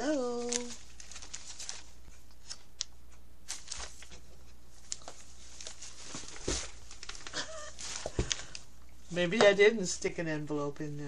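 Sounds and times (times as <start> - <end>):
low steady hum: 0.0 - 11.0
paper pages flipping: 0.3 - 8.6
paper crinkles and taps: 3.5 - 8.6.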